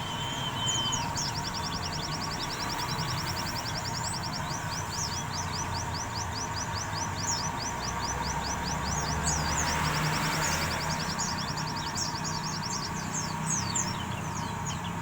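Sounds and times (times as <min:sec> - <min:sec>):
bird chattering high chirps: 0:00.0 - 0:09.8.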